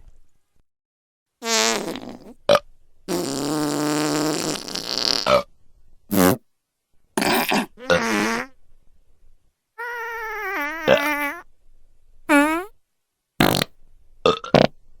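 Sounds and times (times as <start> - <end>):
fart sound effects: 1.4 - 2.4, 3.1 - 5.5, 6.1 - 6.4, 7.2 - 8.5, 9.8 - 11.4, 12.3 - 12.7, 13.4 - 13.7, 14.3 - 14.8.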